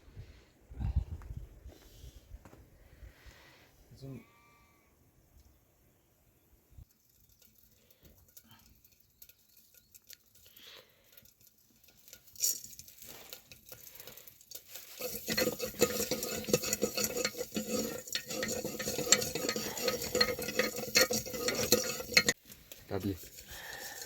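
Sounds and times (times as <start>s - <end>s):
utensil clatter: 6.9s - 24.0s
food sizzling in hot oil: 10.5s - 22.4s.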